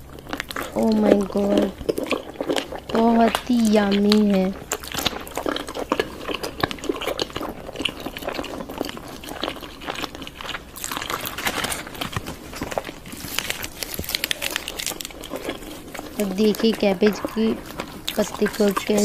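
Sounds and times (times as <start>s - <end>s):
person chewing with mouth clicks: 0.0s - 19.0s.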